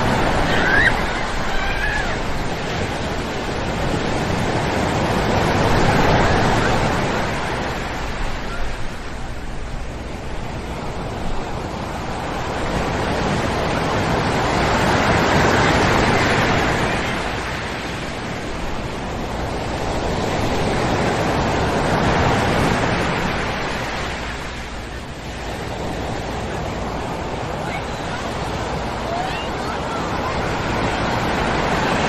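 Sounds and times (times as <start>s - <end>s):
ocean surf breaking on beach: 0.0s - 32.0s.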